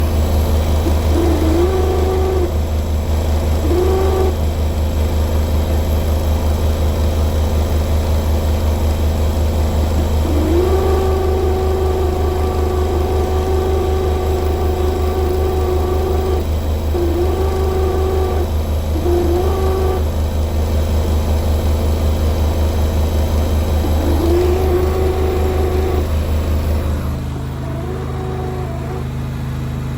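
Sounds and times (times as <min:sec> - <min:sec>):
pitched whine: 0:00.0 - 0:04.9, 0:09.6 - 0:20.4, 0:23.2 - 0:29.9
washing machine pump buzzing hum: 0:00.0 - 0:29.9.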